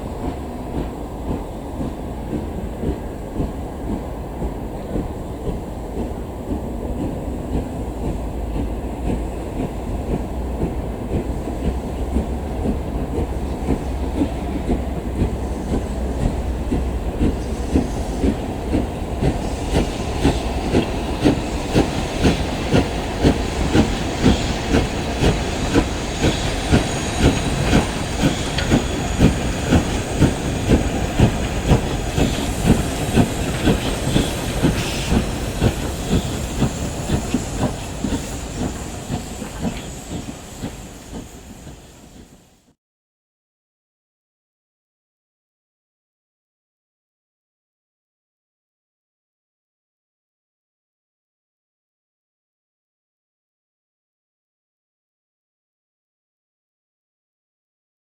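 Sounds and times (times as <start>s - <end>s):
rhythmic train beat: 0.0s - 42.4s
steam train low rumble: 0.0s - 42.8s
steam hiss: 6.9s - 42.7s.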